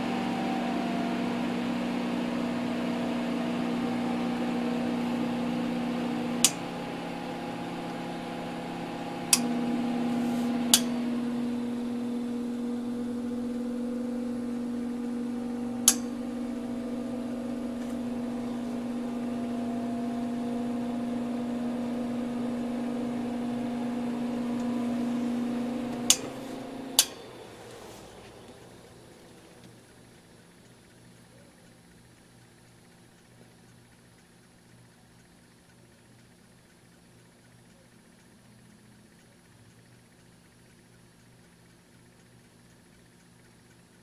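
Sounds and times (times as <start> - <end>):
extractor fans humming: 0.0 - 44.0
switch clicks: 5.9 - 28.3.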